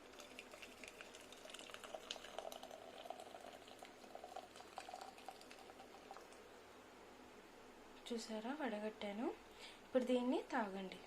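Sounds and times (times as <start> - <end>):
liquid trickling and dripping: 0.0 - 6.4.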